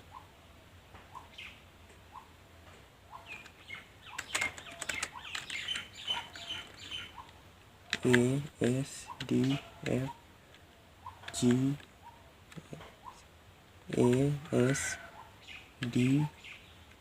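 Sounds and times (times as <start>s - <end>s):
faint bird chirps: 1.0s - 2.4s, 3.1s - 13.3s, 13.9s - 16.9s
computer keyboard clicks: 3.3s - 6.9s, 7.9s - 10.0s, 11.2s - 11.9s, 13.9s - 14.9s.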